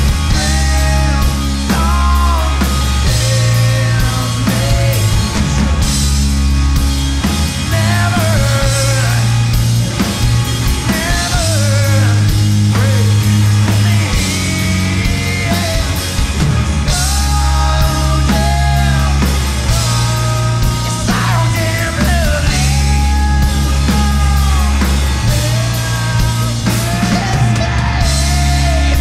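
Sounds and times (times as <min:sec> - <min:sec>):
live rock band playing: 0:00.0 - 0:29.0.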